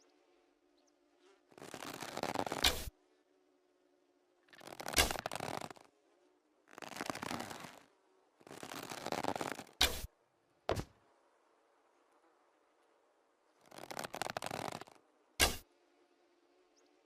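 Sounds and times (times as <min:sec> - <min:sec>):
rough scraping noises: 0:01.2 - 0:03.0, 0:04.5 - 0:06.0, 0:06.7 - 0:10.1, 0:13.6 - 0:15.7
short sharp cracks: 0:04.6 - 0:05.9, 0:13.6 - 0:15.7.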